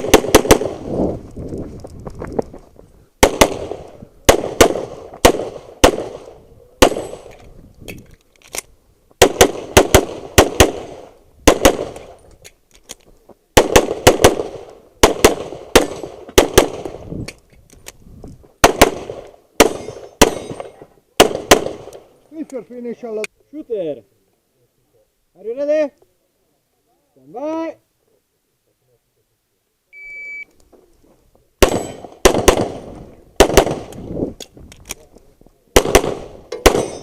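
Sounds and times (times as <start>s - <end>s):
rapid pistol shots: 0.0s - 0.8s, 3.2s - 7.3s, 9.2s - 12.1s, 13.6s - 17.0s, 18.6s - 20.6s, 21.2s - 21.9s, 31.6s - 33.9s, 35.8s - 37.0s.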